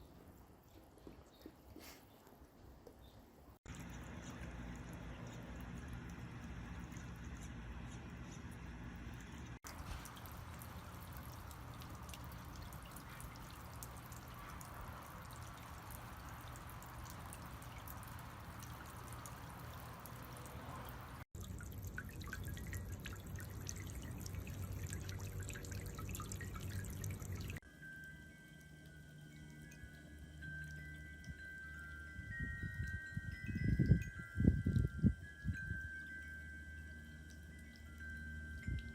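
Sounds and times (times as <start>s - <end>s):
fountain water splashing and dripping: 9.4s - 27.6s.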